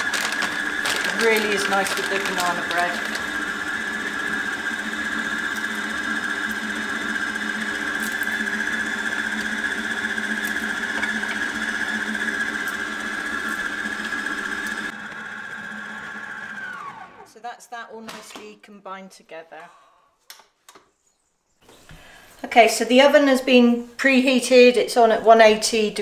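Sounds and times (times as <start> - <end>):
stand mixer motor whine: 0.0 - 17.3.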